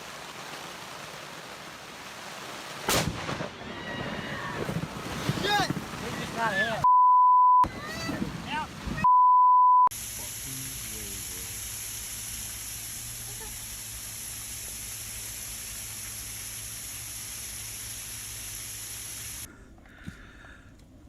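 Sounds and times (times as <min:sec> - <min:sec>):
steady hiss like rain: 0:00.0 - 0:06.8, 0:09.9 - 0:19.5
beep tone: 0:06.8 - 0:07.6, 0:09.0 - 0:09.9.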